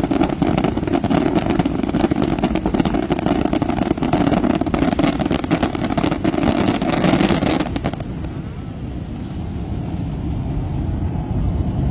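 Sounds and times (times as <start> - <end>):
fireworks crackling: 0.0 - 8.4.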